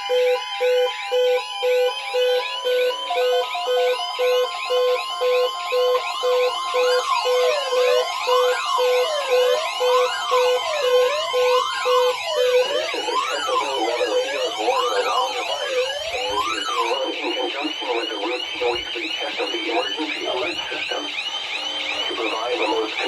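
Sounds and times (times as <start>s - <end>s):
electronic alarm beeping: 0.0s - 23.0s
siren wails: 0.0s - 23.0s
steady electronic tone: 10.1s - 23.0s.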